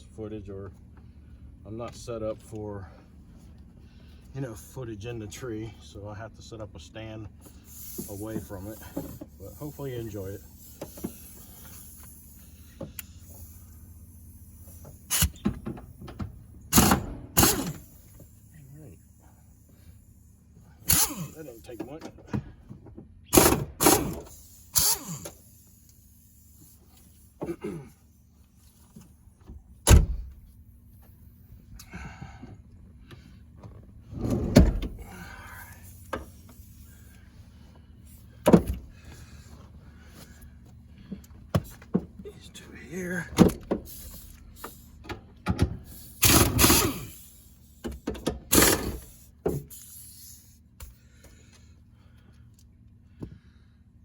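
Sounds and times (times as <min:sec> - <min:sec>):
sharp clunks and knocks: 0:33.6 - 0:35.0, 0:38.4 - 0:38.9.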